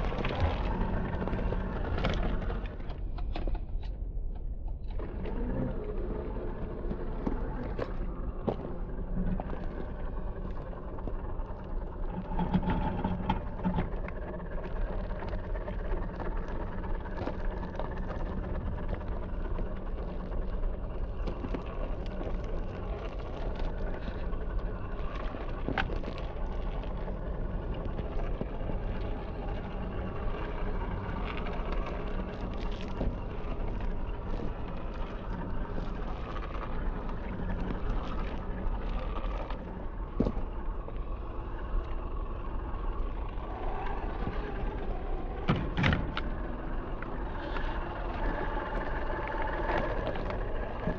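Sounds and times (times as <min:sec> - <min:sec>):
tyres crunching over ground: 0:13.4 - 0:50.9.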